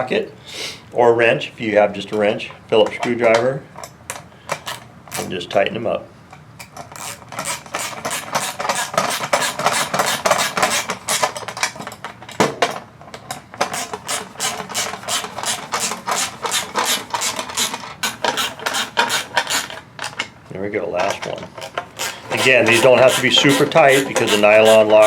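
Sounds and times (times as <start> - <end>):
screwdriver clicking and metal scraping: 6.6 - 12.0, 13.6 - 20.3, 21.0 - 25.0.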